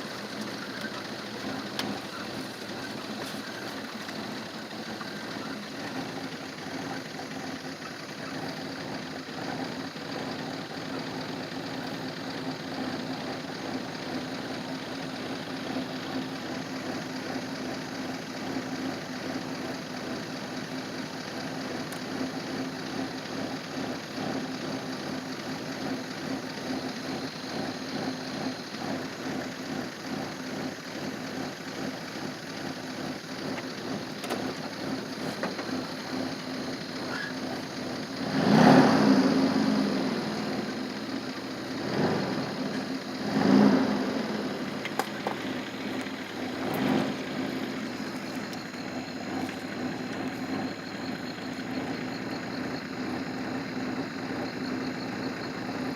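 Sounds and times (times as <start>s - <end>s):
vehicle engine idling: 0.0s - 55.9s.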